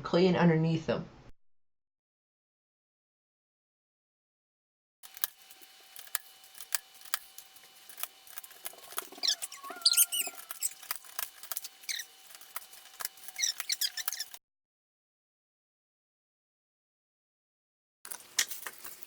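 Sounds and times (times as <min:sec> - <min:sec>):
keycaps popping off: 0:05.0 - 0:14.4
squeaky plastic rubbing: 0:05.1 - 0:14.4.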